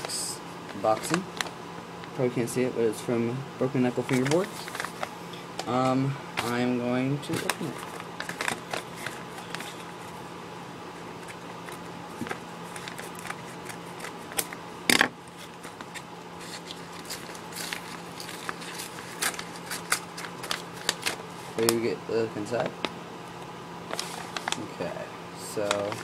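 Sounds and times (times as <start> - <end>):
cardboard tearing: 16.4 - 21.7.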